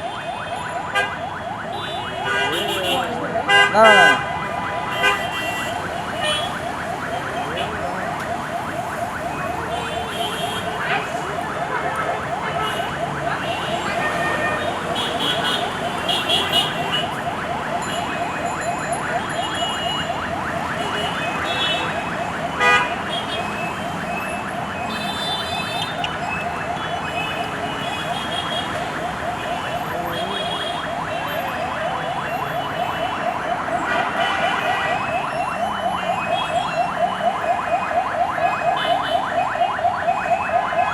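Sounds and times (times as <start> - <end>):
traffic noise: 0.0 - 40.9
warbling siren: 0.0 - 40.9
car horn toots: 2.2 - 6.5, 22.6 - 23.4.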